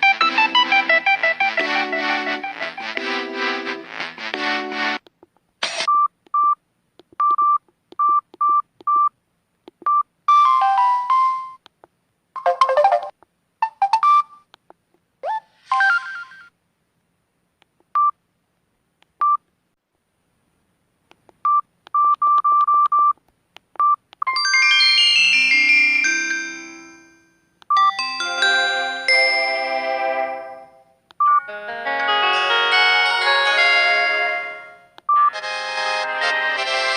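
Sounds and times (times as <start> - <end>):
phone key beeps: 7.2 - 9.1, 9.8 - 10.4, 21.4 - 23.2, 23.8 - 24.4, 27.6 - 27.9, 31.2 - 31.5
chiming melody: 24.4 - 34.9.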